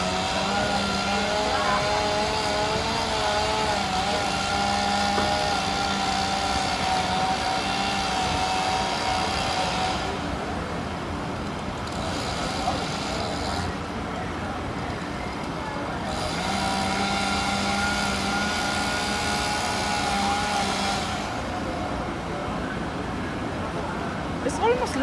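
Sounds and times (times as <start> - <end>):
vehicle engine noise: 0.0 - 25.0.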